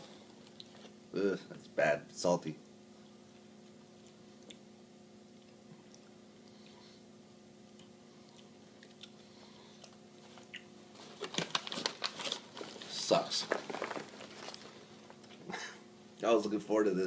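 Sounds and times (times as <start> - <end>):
steady low hum: 0.0 - 17.0
chewing popcorn: 0.2 - 1.0, 3.0 - 4.7, 5.3 - 6.9, 7.7 - 15.6.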